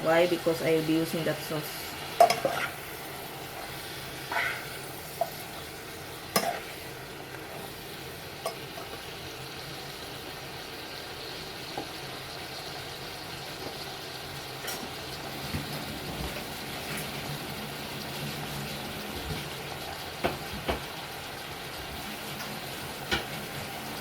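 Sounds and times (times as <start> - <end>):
vegetables sizzling in a frying pan: 0.0 - 24.0.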